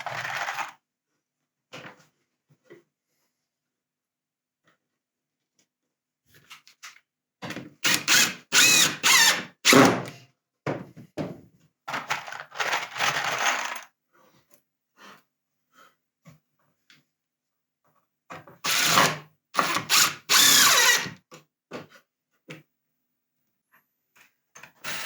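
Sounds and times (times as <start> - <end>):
drill driving screws into wood: 7.8 - 10.1, 18.6 - 21.2.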